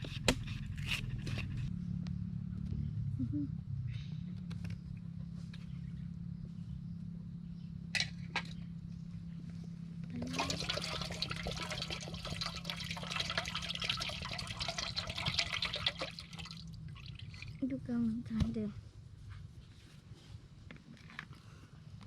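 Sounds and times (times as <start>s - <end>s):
steady low hum: 0.0s - 22.0s
liquid pouring and splashing: 10.2s - 17.6s.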